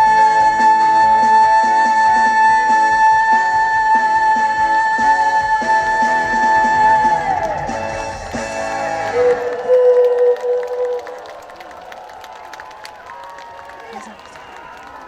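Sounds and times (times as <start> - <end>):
band rhythmic backing: 0.0 - 11.6.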